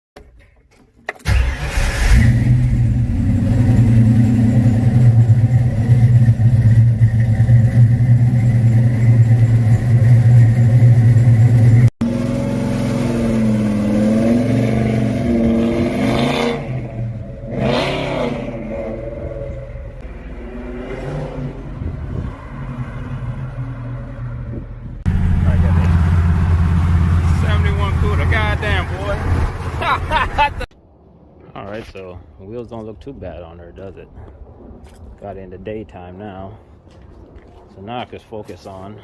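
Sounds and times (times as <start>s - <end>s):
car engine running and revving: 2.0s - 30.6s.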